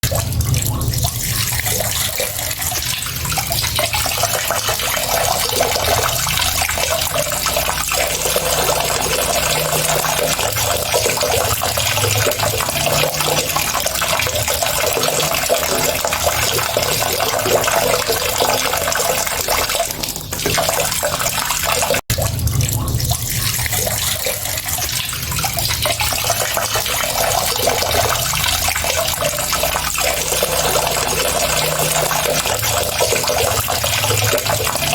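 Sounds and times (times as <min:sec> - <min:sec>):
water running: 0:00.0 - 0:34.9.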